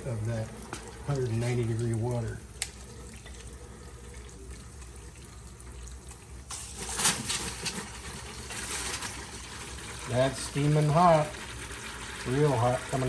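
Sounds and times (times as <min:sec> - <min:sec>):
water spraying with hiss: 0:06.5 - 0:09.1.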